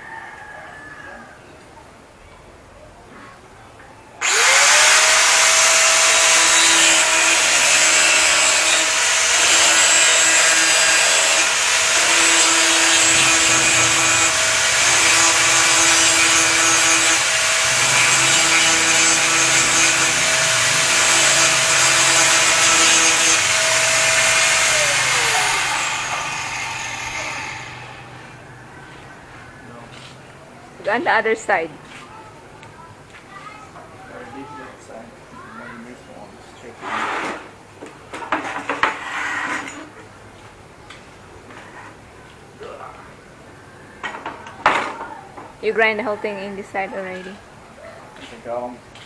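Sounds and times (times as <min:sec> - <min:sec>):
angle grinder whining: 0:04.2 - 0:28.4
grinding metal: 0:04.2 - 0:28.4.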